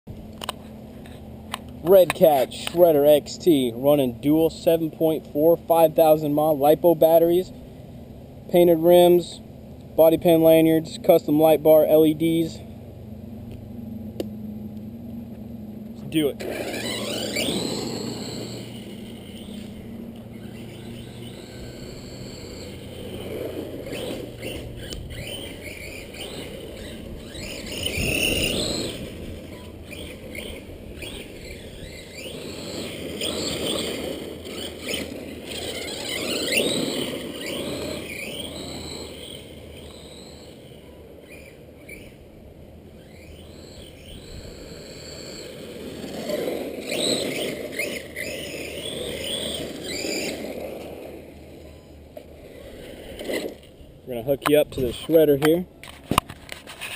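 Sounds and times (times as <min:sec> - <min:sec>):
rc truck motor whining: 0:00.2 - 0:56.9
tyres rushing in sand: 0:16.1 - 0:40.6.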